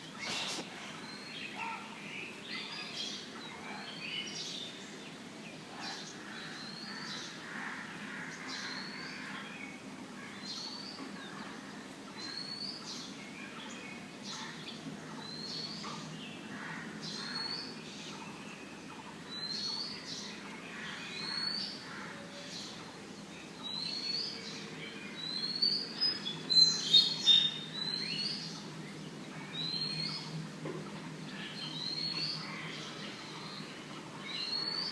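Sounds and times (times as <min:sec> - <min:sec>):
birds chirping: 0:00.0 - 0:07.4.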